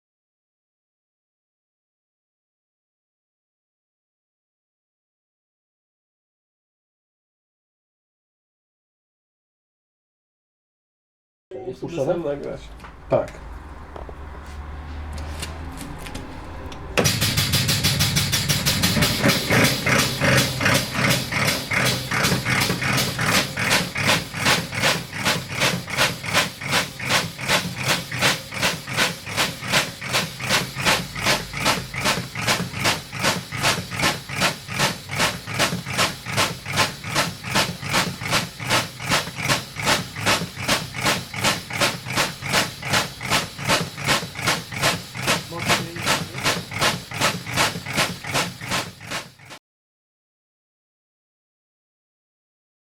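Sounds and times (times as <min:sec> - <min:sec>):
spray gun washer pulsing hiss: 0:17.0 - 0:49.6.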